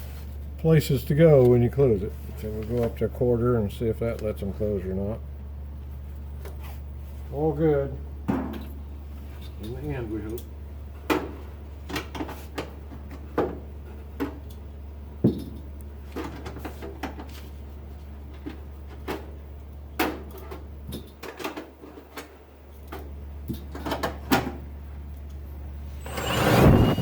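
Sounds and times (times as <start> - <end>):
power drill whining: 25.9 - 27.0.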